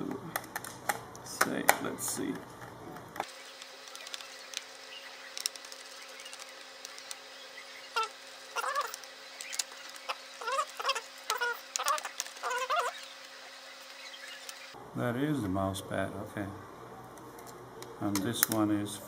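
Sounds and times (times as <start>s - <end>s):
steady low hum: 0.0s - 19.0s
plastic creaking: 7.9s - 13.0s.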